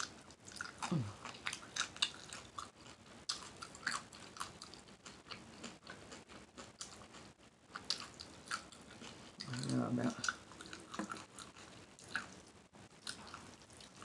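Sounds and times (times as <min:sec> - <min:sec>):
person chewing with mouth smacking: 0:00.0 - 0:14.0
person humming: 0:00.9 - 0:01.2.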